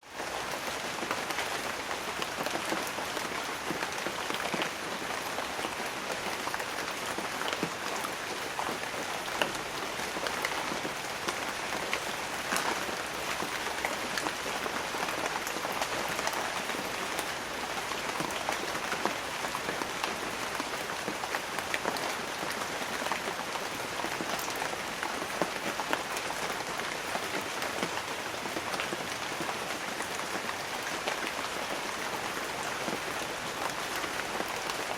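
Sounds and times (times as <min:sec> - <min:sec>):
rain on leaves: 0:00.0 - 0:34.9.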